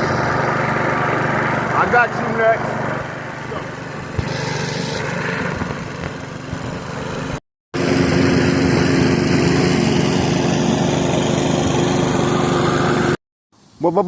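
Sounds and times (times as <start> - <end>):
lawn mower engine running: 0.0 - 13.2.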